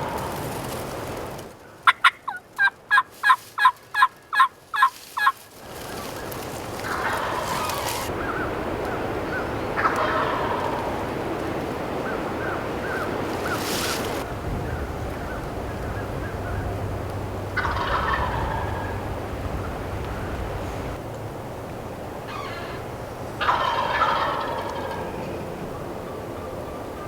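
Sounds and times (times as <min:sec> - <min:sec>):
wild turkeys calling: 0:01.6 - 0:21.0, 0:22.2 - 0:27.0
turkey gobbling: 0:01.8 - 0:05.4, 0:06.0 - 0:11.2, 0:17.4 - 0:21.0, 0:22.3 - 0:22.8, 0:23.4 - 0:27.0
wind noise: 0:05.6 - 0:27.0.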